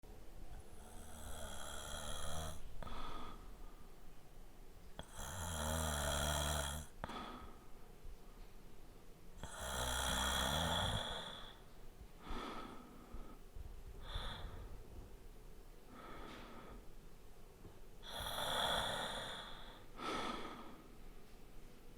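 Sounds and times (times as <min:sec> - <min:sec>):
soft breathing: 0:00.5 - 0:04.4, 0:06.8 - 0:08.7, 0:10.5 - 0:21.9
man snoring: 0:00.6 - 0:03.0, 0:05.0 - 0:07.0, 0:09.4 - 0:11.6, 0:18.0 - 0:19.8.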